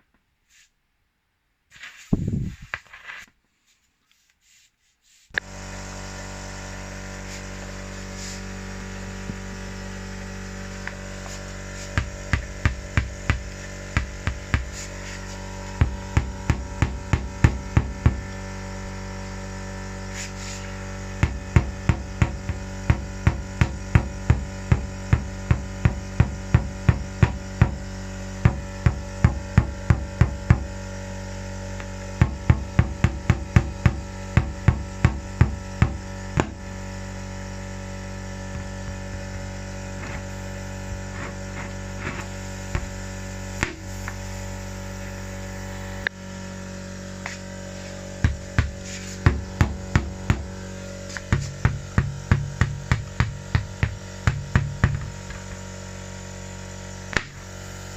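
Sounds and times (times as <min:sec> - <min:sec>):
low hum: 0:05.4 - 0:57.9
sharp knocks: 0:11.9 - 0:18.4, 0:48.2 - 0:55.6.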